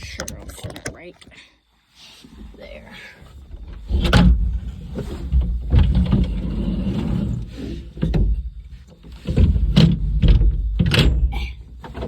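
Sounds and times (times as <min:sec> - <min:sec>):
clunks and knocks: 0:03.5 - 0:12.0.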